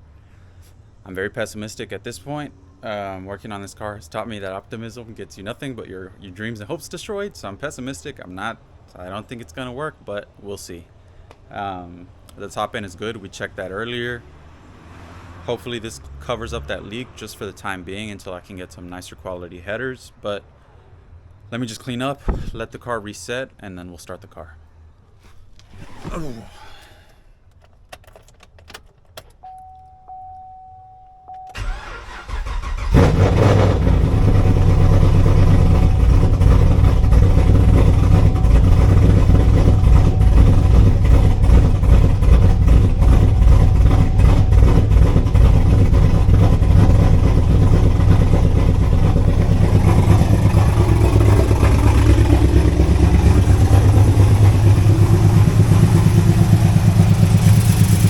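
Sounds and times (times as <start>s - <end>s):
engine cranking: 31.6s - 58.0s
engine idling and knocking: 33.8s - 58.0s.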